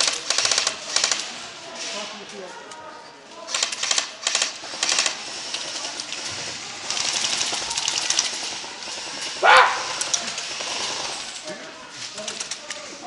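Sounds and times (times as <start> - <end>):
airsoft guns firing bursts: 0.0 - 1.4, 3.5 - 11.4.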